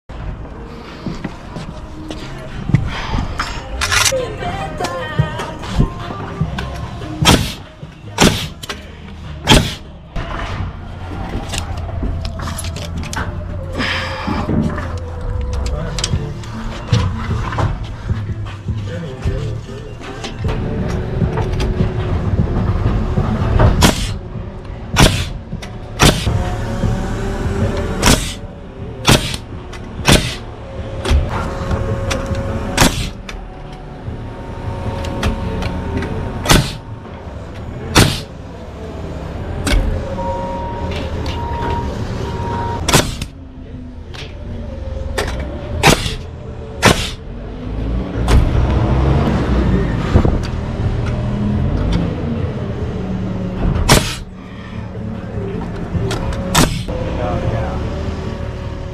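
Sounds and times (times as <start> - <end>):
nail gun impacts on wood: 29.1 - 29.4, 30.1 - 30.4.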